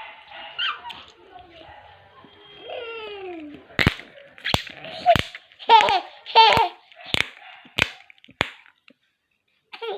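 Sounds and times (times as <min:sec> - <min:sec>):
baby laughing: 0:04.9 - 0:06.9.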